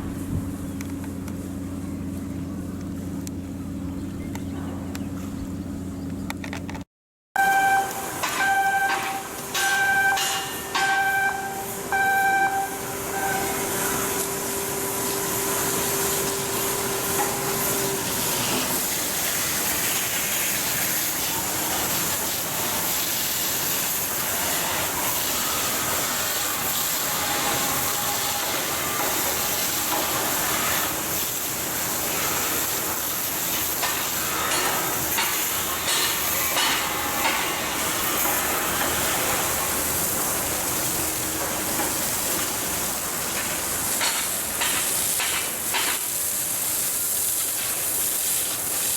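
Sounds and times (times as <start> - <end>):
short electronic beeps: 7.4 - 13.7
loud steady hiss: 7.5 - 48.9.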